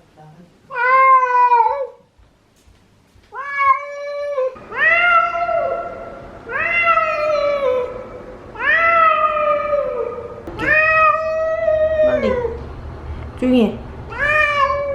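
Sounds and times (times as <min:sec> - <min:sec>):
cat meowing: 0:00.7 - 0:02.0, 0:03.3 - 0:12.6, 0:14.1 - 0:14.9.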